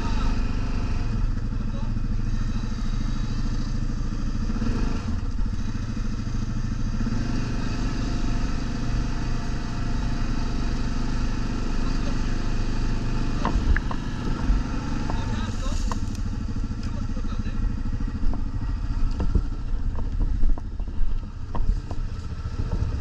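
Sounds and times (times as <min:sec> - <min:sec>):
off-road vehicle engine running: 0:00.0 - 0:23.0.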